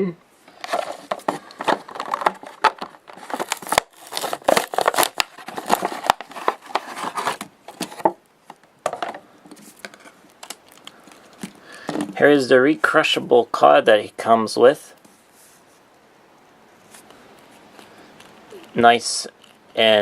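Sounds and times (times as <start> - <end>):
cardboard and plastic crinkling: 0.4 - 12.5.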